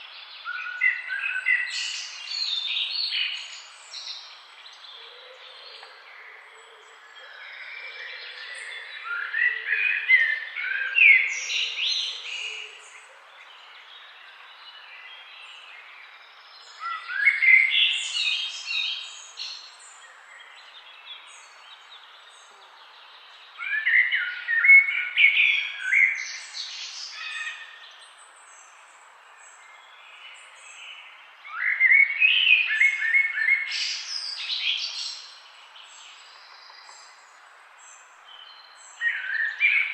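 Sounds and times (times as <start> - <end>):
songbird singing: 0.0 - 39.9
faint steady hiss: 10.2 - 39.9.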